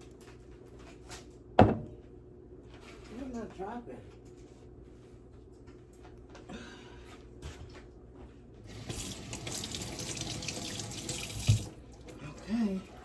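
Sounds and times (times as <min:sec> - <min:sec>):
tap water running: 0:08.7 - 0:12.2.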